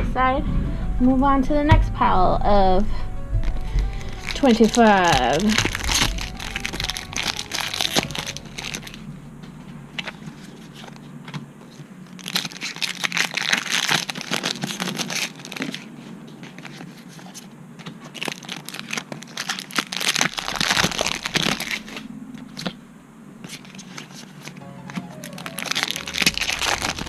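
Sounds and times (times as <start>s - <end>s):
foil wrappers tearing and crinkling: 3.4s - 9.1s, 11.6s - 22.8s, 23.4s - 27.0s
handling of cards: 3.4s - 22.8s, 23.4s - 27.0s.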